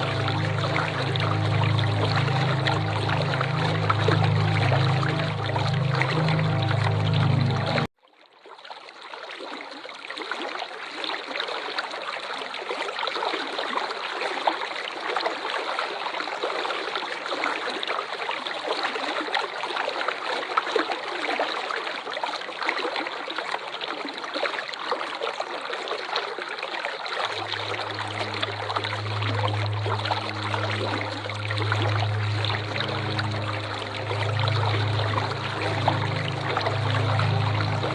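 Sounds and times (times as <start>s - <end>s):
low steady hum: 0.0s - 7.9s, 27.2s - 37.9s
waterfall rushing: 0.0s - 7.9s, 27.3s - 37.9s.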